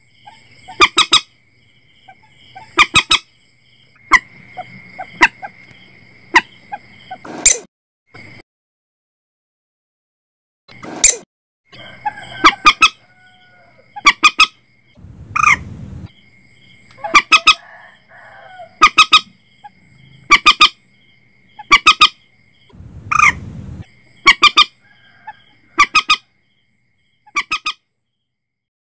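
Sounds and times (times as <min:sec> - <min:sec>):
moorhen calls: 0:00.2 - 0:01.3, 0:02.1 - 0:03.2, 0:13.9 - 0:14.6, 0:15.2 - 0:15.8, 0:17.0 - 0:17.8, 0:18.8 - 0:19.3, 0:20.3 - 0:20.8, 0:21.6 - 0:22.2, 0:23.1 - 0:23.5, 0:24.2 - 0:24.8
low rumble: 0:15.0 - 0:16.1, 0:22.7 - 0:23.9.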